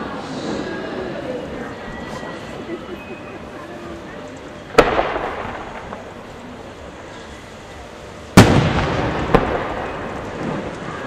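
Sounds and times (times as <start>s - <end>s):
firework crack: 3.4s - 11.0s
firework boom echoing: 4.7s - 6.2s, 8.4s - 11.0s.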